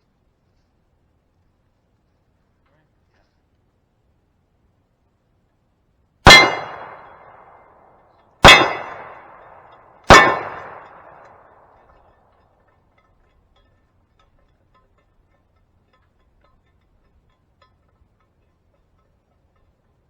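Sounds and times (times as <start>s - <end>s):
pistol shots: 6.3s - 7.8s, 8.4s - 11.8s
steel plate target clanging: 6.3s - 7.8s, 8.4s - 12.0s.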